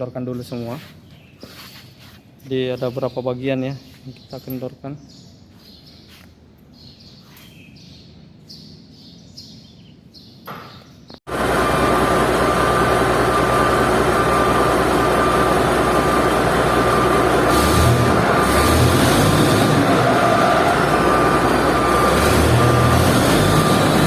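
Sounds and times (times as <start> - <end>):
faint bird chirps: 1.0 - 11.2
machine noise with whine: 11.3 - 24.0.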